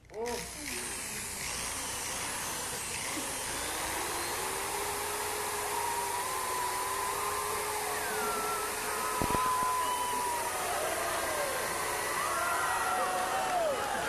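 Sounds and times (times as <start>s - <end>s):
electric drill running: 0.0s - 14.0s
faint whine: 5.6s - 14.0s.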